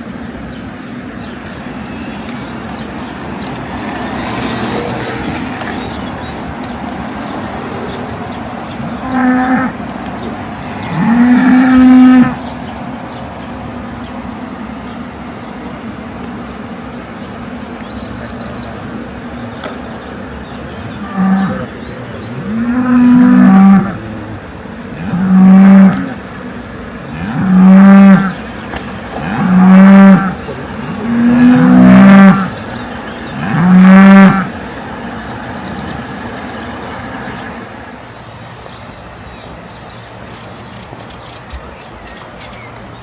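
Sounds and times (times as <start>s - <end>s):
cow mooing: 8.8s - 9.8s, 10.8s - 12.4s, 21.0s - 24.4s, 25.0s - 26.2s, 27.1s - 28.4s, 29.2s - 32.6s, 33.3s - 34.5s.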